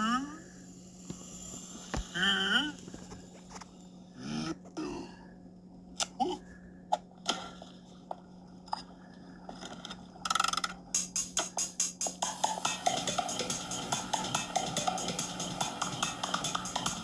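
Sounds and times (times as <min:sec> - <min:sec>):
steady low hum: 0:00.0 - 0:17.0
music with drums: 0:11.0 - 0:17.0.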